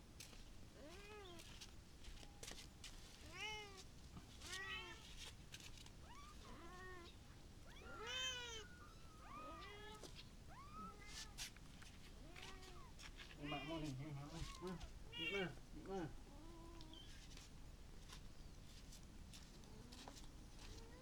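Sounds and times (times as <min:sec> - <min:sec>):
kittens mewing: 0:06.1 - 0:11.4, 0:12.2 - 0:17.0.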